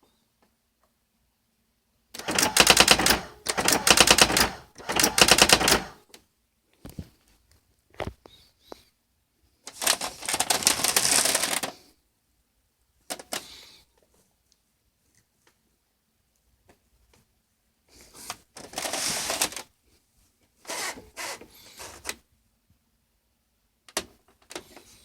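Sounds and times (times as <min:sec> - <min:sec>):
typewriter printing strikes: 0:02.2 - 0:06.0.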